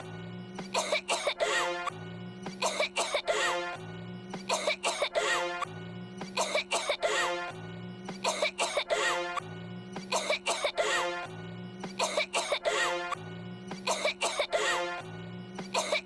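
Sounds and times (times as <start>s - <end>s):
background music: 0.0s - 16.0s
person coughing: 0.6s - 1.7s, 2.6s - 3.5s, 4.5s - 5.6s, 6.3s - 7.3s, 8.2s - 9.4s, 10.1s - 11.0s, 11.9s - 12.8s, 13.8s - 14.8s, 15.7s - 16.0s.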